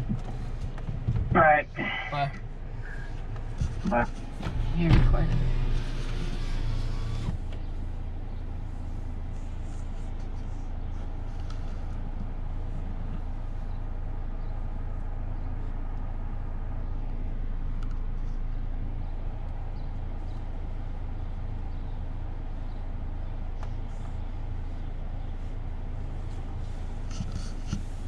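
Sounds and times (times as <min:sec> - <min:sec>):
car cabin rumble: 0:00.0 - 0:28.0
faint click: 0:17.8 - 0:18.0.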